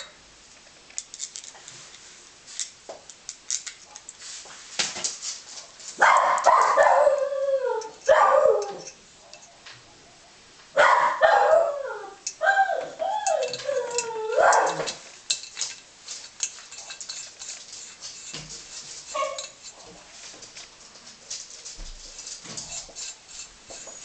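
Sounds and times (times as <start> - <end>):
dog howling and whining: 6.3 - 9.0, 10.8 - 15.0.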